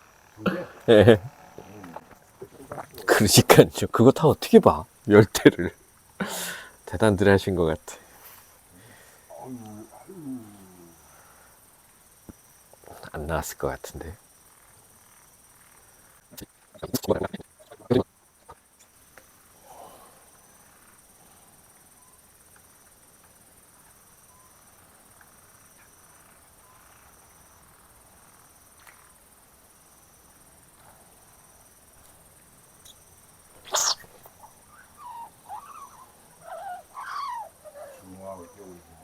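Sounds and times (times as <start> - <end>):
pulsing insect chirring: 0.0 - 39.0
short wavering calls: 32.8 - 39.0.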